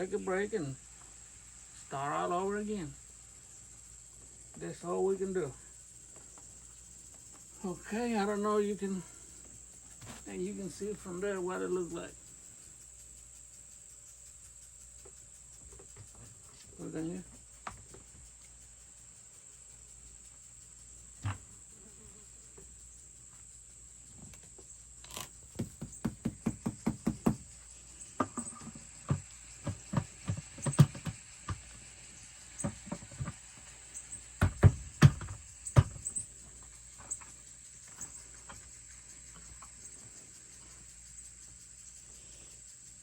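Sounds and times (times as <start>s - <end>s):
loud thumps: 25.1s - 27.5s, 34.3s - 36.2s
taps on plastic bucket: 25.1s - 27.5s, 28.2s - 31.8s, 32.6s - 33.4s, 34.4s - 36.2s.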